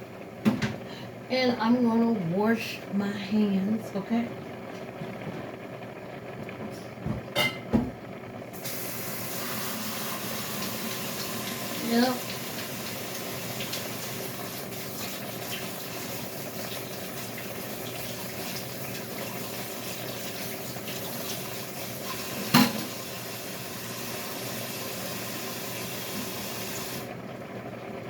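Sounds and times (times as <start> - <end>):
tap running into sink: 22.3 - 23.0.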